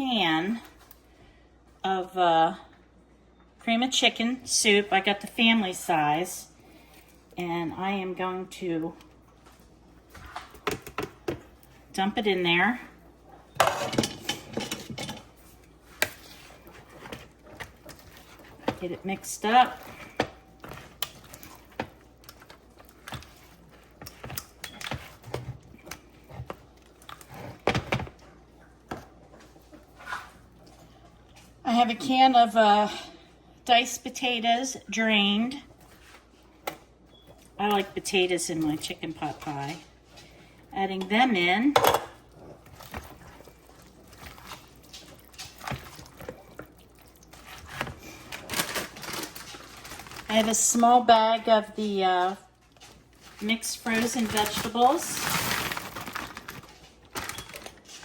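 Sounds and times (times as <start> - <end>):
wet squishing of food mixing: 4.6 - 58.0.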